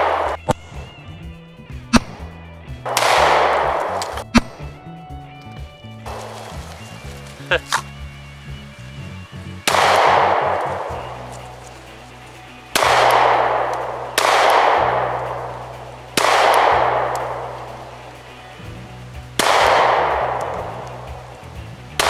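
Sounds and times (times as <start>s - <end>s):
pistol shots: 0.0s - 0.7s, 2.9s - 4.7s, 9.6s - 11.7s, 12.7s - 18.3s, 19.4s - 22.0s.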